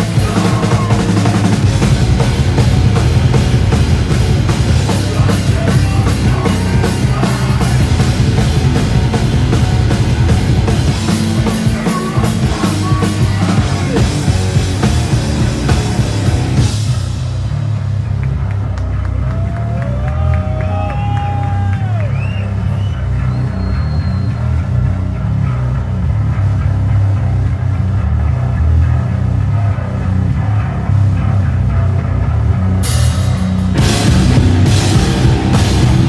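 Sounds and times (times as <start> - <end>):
live rock band playing: 0.0 - 21.7, 32.8 - 36.0
pounding drum kit: 0.0 - 36.0.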